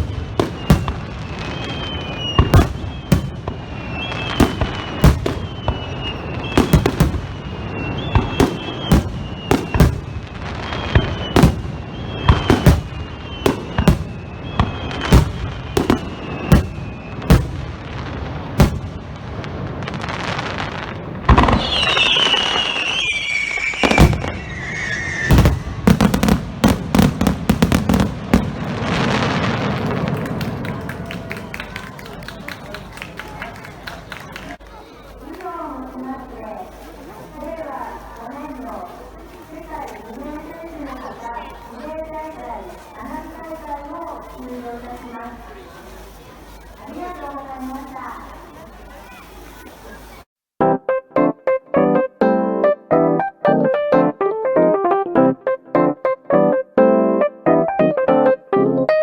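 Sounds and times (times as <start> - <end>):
firework shells bursting: 0.0 - 34.6
fireworks whistling: 0.0 - 35.3, 36.0 - 50.3.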